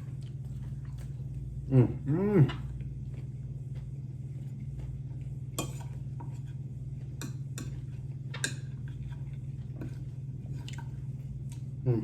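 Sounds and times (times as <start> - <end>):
utensils clinking against a dish: 7.2 - 9.1.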